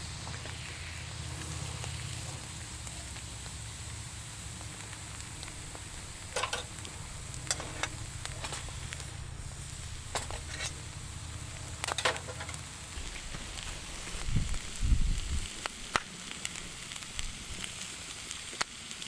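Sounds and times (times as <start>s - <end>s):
sharp pops of fire: 0.0s - 19.0s
wood fire crackling: 0.0s - 19.0s.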